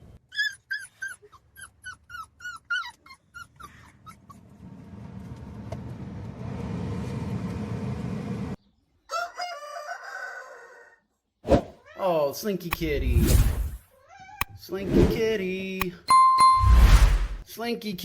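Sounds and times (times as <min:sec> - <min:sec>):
dog whimpering and yelping: 0:00.3 - 0:04.4.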